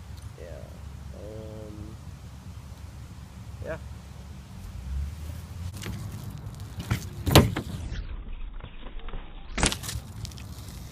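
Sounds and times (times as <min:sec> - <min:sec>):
low steady rumble: 0:00.0 - 0:10.9.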